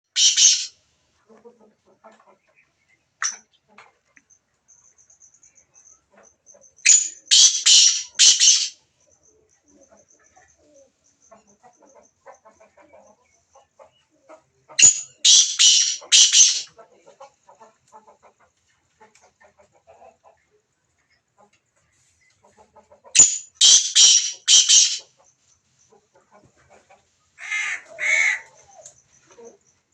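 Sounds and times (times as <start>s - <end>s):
faint chirps and clucks: 0.0s - 29.9s
bird harsh high calls: 0.1s - 0.7s, 6.8s - 8.8s, 14.8s - 16.7s, 23.2s - 25.1s, 27.4s - 28.8s.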